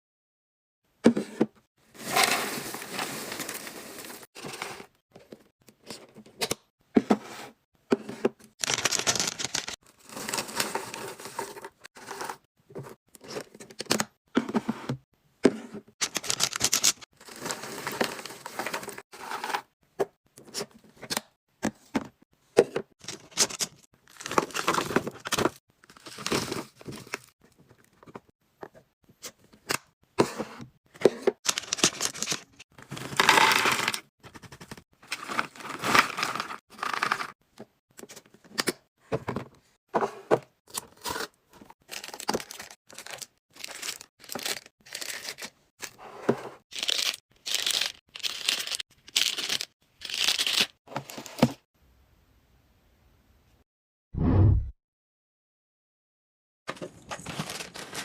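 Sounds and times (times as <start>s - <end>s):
plastic packaging crinkling and tearing: 8.6s - 11.4s, 41.8s - 45.5s, 46.7s - 50.8s, 57.0s - 58.0s.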